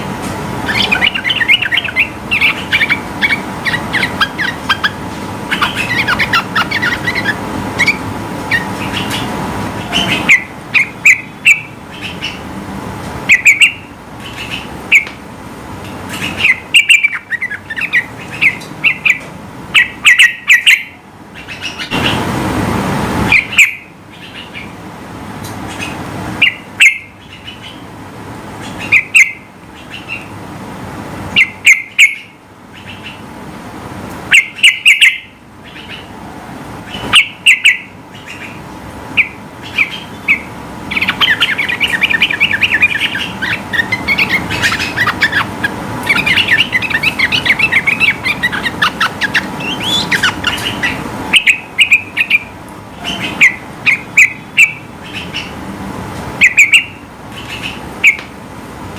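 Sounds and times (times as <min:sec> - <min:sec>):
bulbul singing chirpy phrases: 0:00.0 - 0:12.4.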